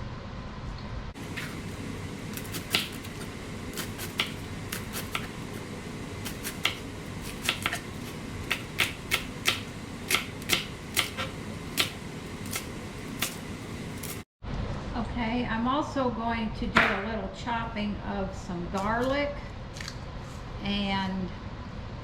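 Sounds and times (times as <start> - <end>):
knife tapping cutting board: 2.3 - 5.5, 6.2 - 13.4.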